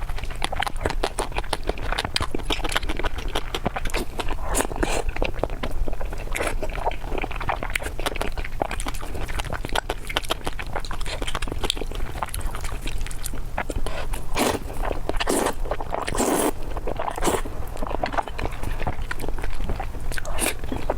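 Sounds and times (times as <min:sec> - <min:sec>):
person chewing food: 0:00.0 - 0:20.9
steady low hum: 0:11.3 - 0:20.9.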